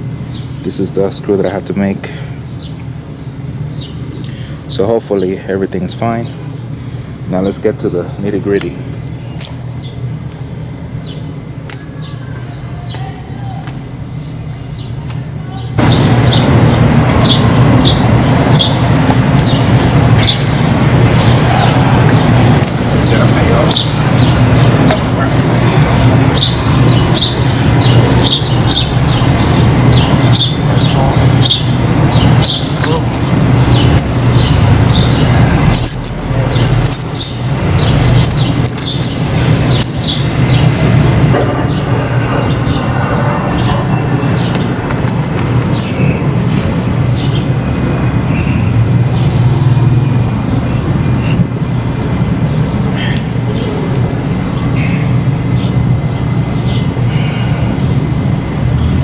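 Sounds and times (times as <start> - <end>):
birds chirping: 0.0 - 59.0
steady low hum: 0.0 - 59.0
loud low rumbling: 15.7 - 59.0
rattling clicks: 38.1 - 40.1.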